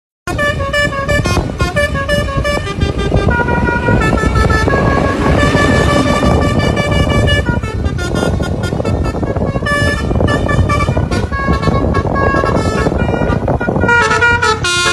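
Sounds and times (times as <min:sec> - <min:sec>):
musical bus horn playing a tune: 0:00.3 - 0:14.9
steady low rumble: 0:01.3 - 0:09.6.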